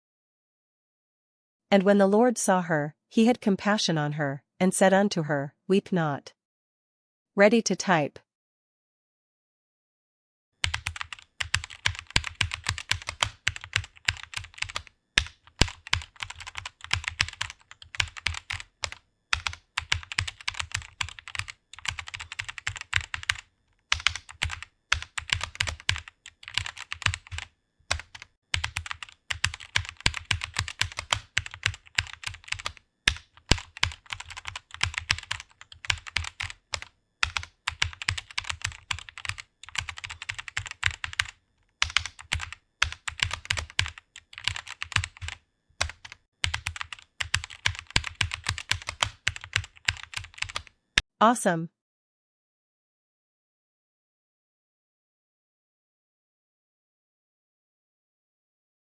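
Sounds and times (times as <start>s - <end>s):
fast keyboard typing clicks: 10.6s - 50.7s.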